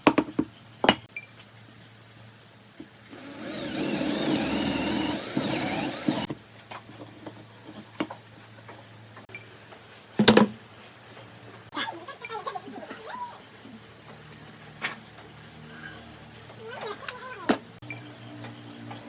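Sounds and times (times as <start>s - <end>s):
handheld power tool running: 3.1s - 6.3s.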